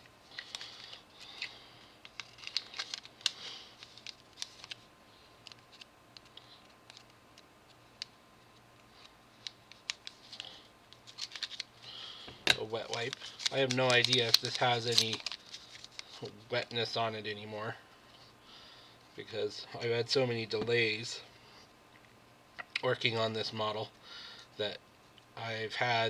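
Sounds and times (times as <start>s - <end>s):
small items clicking and rustling: 0.3s - 8.1s, 8.8s - 16.3s.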